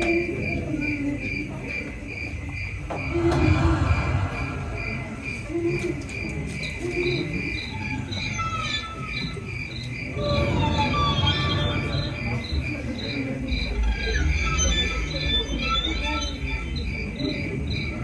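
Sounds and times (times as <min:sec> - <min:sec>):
cricket chirping: 0:00.0 - 0:18.0
low rumble: 0:03.0 - 0:06.4.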